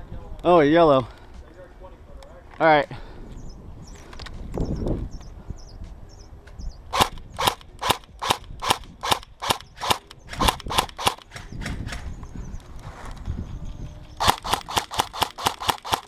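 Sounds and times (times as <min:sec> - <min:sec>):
airsoft gun shots: 0:06.9 - 0:12.0, 0:14.2 - 0:16.0.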